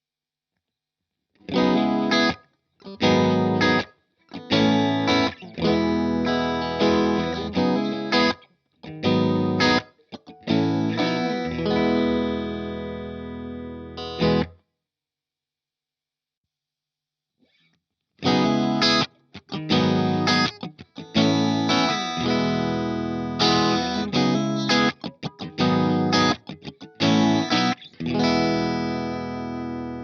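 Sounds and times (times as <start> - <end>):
electric guitar chord stabs: 18.2 - 30.0.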